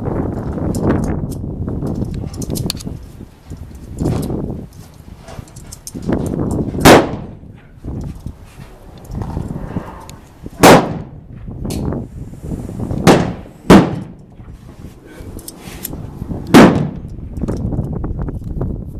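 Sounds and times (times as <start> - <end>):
handgun shots: 6.8 - 7.3, 10.6 - 11.1, 13.0 - 14.2, 16.5 - 17.0.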